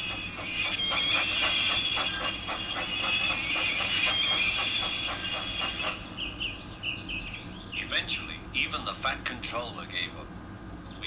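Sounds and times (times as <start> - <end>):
high squeal: 0.0 - 6.0
steam locomotive puffing: 0.0 - 6.2
bird chirps: 0.0 - 8.1.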